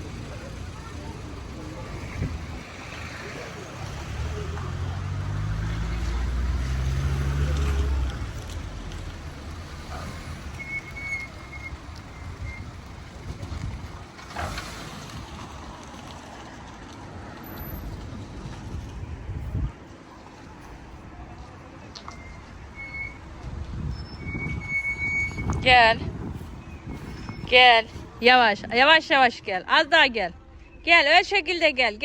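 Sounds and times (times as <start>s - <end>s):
car engine idling: 0.0s - 16.5s.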